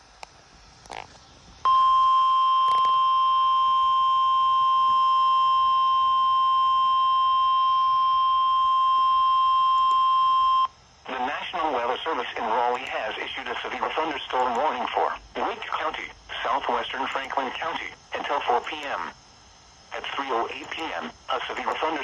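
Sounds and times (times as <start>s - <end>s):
long steady alarm beep: 1.7s - 10.8s.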